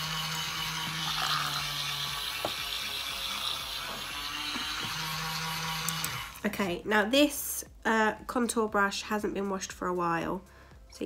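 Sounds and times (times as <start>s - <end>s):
small electric motor humming: 0.0s - 6.4s.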